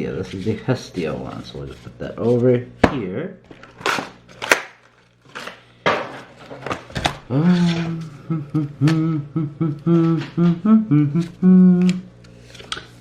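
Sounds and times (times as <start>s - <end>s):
person humming: 7.2s - 12.2s.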